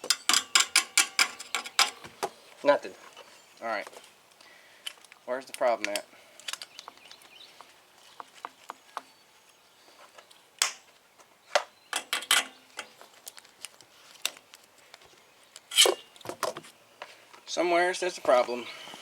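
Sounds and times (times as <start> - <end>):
cables and clamps clicking and rattling: 0.0 - 2.2, 12.0 - 14.7.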